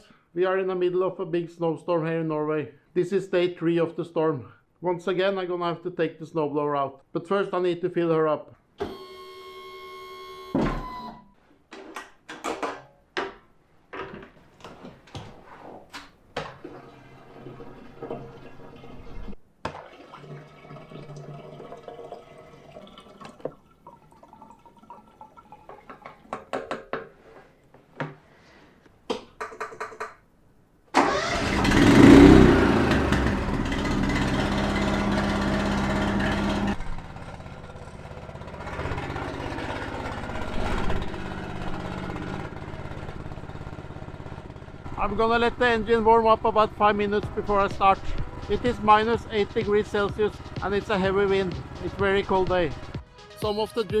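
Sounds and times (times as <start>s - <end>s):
snowblower engine running: 31.0s - 53.0s.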